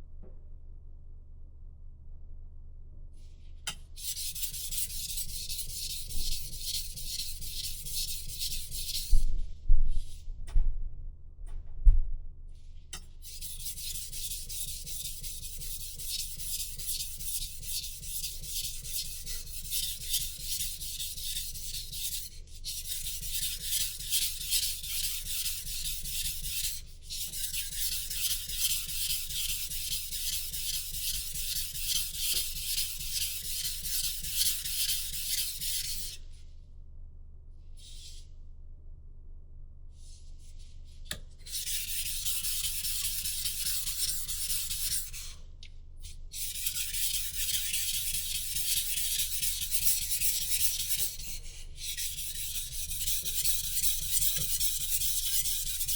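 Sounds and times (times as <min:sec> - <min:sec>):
knife blade scraping on sharpener: 0:13.2 - 0:36.2, 0:41.4 - 0:45.3, 0:46.0 - 0:55.9.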